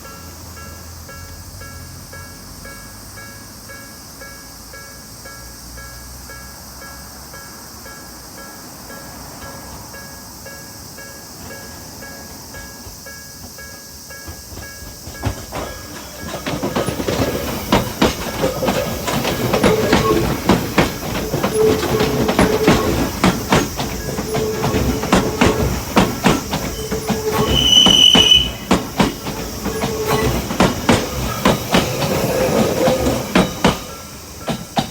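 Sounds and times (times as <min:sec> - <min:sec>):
train wheels clattering over rail joints: 0:09.0 - 0:34.9.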